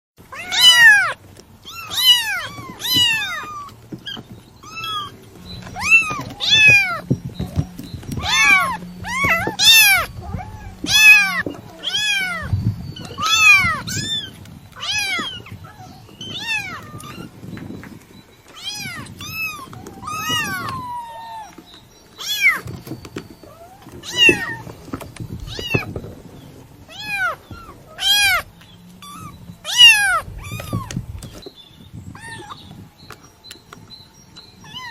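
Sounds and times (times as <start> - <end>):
kitten meowing: 0.3 - 7.0, 8.1 - 17.3, 18.6 - 21.6, 23.6 - 24.7, 25.4 - 25.9, 26.9 - 31.0.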